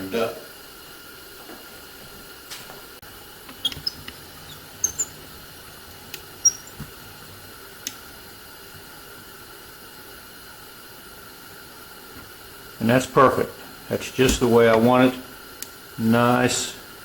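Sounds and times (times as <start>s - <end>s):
short high squeaks: 3.5s - 7.4s.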